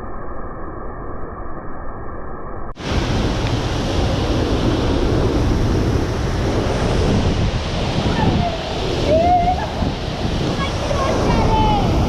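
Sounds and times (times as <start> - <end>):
muffled rushing noise: 2.7 - 12.0
waterfall roaring: 2.8 - 12.0
wind buffeting microphone: 2.8 - 12.0.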